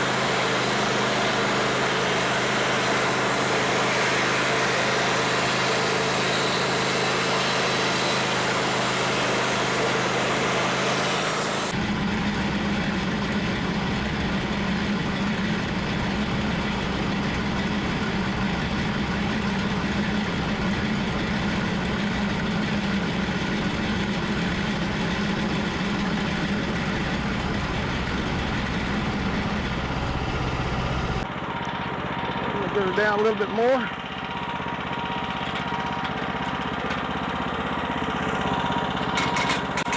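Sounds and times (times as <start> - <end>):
hiss: 0.0 - 11.7
sawmill engine running: 0.0 - 39.9.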